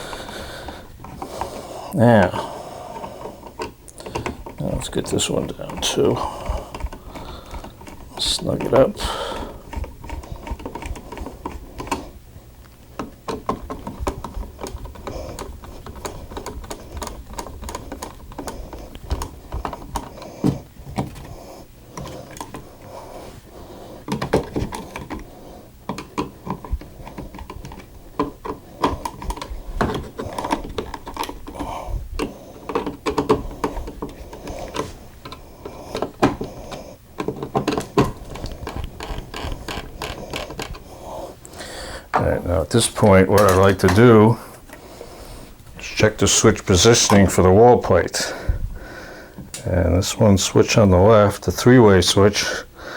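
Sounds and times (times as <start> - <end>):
screwdriver clicks and scrapes: 9.7 - 12.0, 25.9 - 31.6, 32.2 - 40.8.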